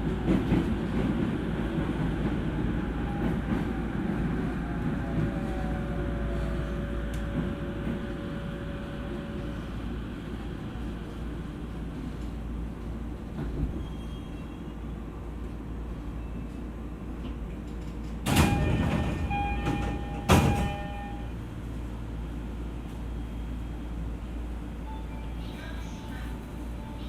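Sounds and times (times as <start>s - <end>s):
train doors banging shut: 17.7s - 21.3s
door chime: 18.3s - 21.2s.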